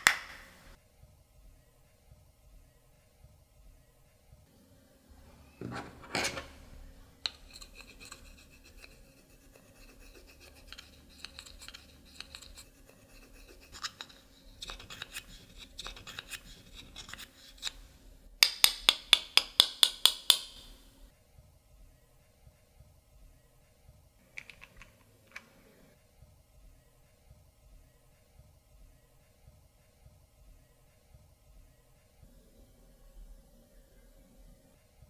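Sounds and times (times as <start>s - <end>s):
scraping and scratching slime: 5.7s - 18.0s.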